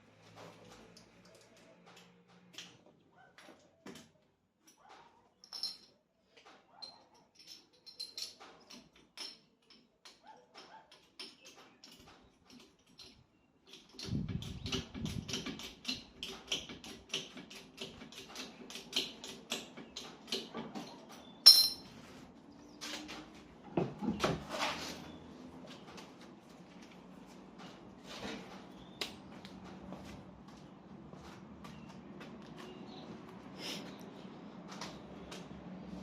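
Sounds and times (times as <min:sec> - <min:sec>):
metal tools clicking: 0:06.8 - 0:10.2, 0:21.4 - 0:21.9.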